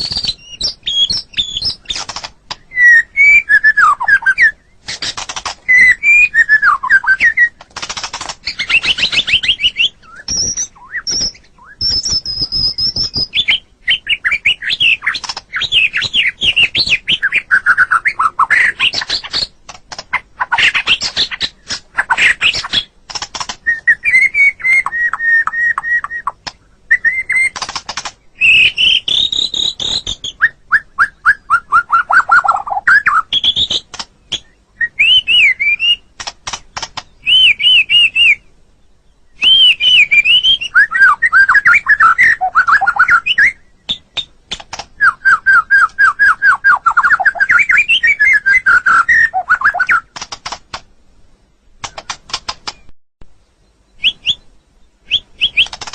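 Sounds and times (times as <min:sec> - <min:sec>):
bird singing whistled phrases: 0:00.0 - 0:01.9, 0:02.6 - 0:04.8, 0:05.6 - 0:07.6, 0:08.5 - 0:19.5, 0:23.6 - 0:27.6, 0:28.4 - 0:36.1, 0:37.2 - 0:38.5, 0:39.3 - 0:44.3, 0:45.0 - 0:50.1, 0:53.9 - 0:55.8.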